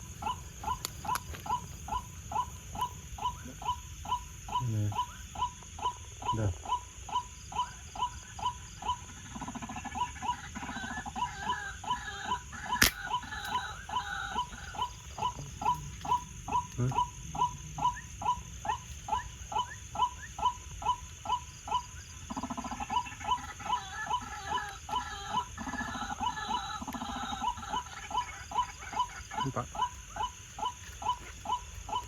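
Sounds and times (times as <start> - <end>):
waterhen calling: 9.0 - 32.0
sharp crack: 12.8 - 13.1.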